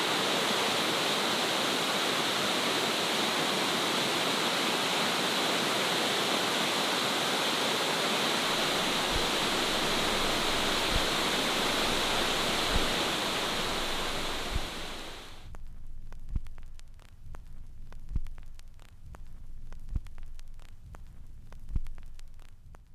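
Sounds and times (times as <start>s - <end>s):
waterfall roar: 0.0s - 15.4s
soft low thumps: 8.6s - 22.9s.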